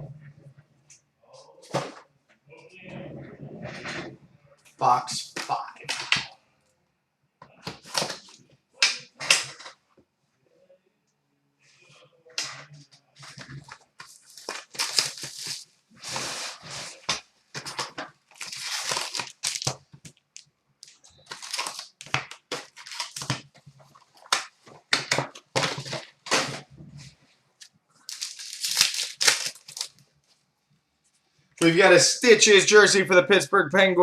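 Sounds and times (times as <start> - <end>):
plastic wrapping tearing and crinkling: 13.2 - 26.6, 27.6 - 30.0.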